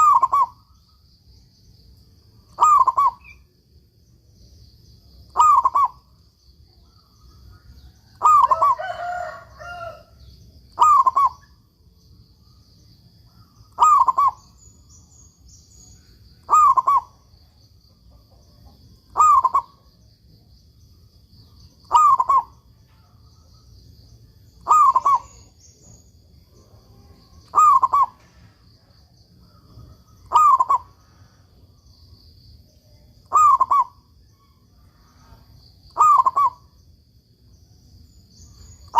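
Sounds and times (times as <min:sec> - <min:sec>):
dove cooing: 0:00.0 - 0:00.6, 0:02.6 - 0:03.4, 0:05.3 - 0:06.0, 0:08.2 - 0:10.1, 0:10.7 - 0:11.4, 0:13.8 - 0:14.4, 0:16.4 - 0:17.2, 0:18.1 - 0:19.9, 0:21.9 - 0:22.6, 0:24.6 - 0:25.6, 0:27.4 - 0:28.4, 0:29.5 - 0:31.3, 0:33.3 - 0:34.0, 0:35.9 - 0:36.7.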